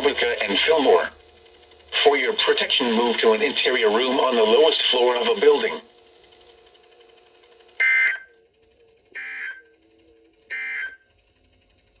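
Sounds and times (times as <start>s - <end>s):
faint radio hum: 0.0s - 1.1s
two-tone digital data bursts: 7.8s - 8.3s, 9.2s - 9.6s, 10.5s - 11.0s.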